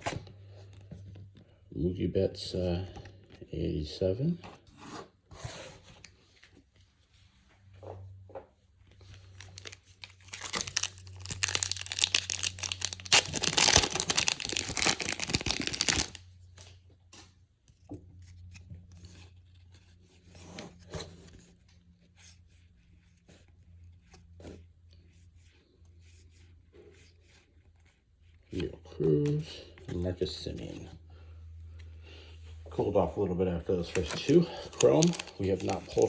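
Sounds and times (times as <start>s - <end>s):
cards tapping and rustling: 9.1s - 16.6s, 33.8s - 36.0s
foil wrapper tearing and crinkling: 9.2s - 16.2s, 33.9s - 36.0s.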